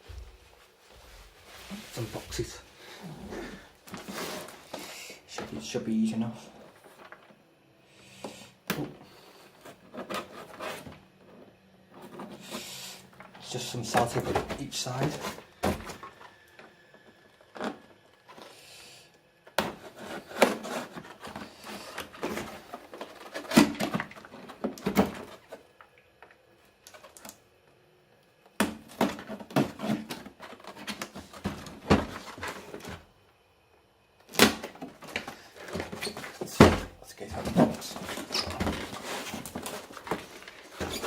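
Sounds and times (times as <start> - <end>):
packaging rustling: 19.7 - 25.9, 34.3 - 41.0
cardboard box being opened: 37.4 - 41.0.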